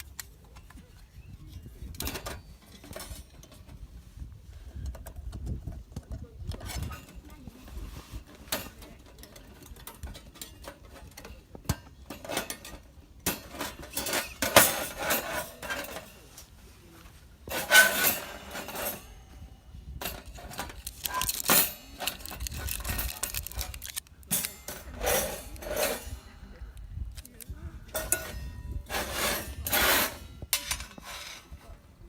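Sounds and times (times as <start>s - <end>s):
metal rattling: 17.4s - 26.5s
metal gear clinking and clattering: 17.5s - 19.2s, 20.0s - 26.3s.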